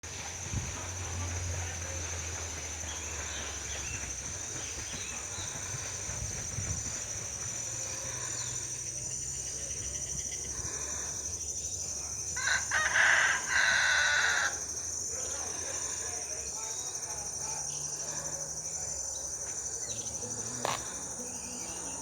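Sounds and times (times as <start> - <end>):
rooster crowing: 12.4 - 14.7.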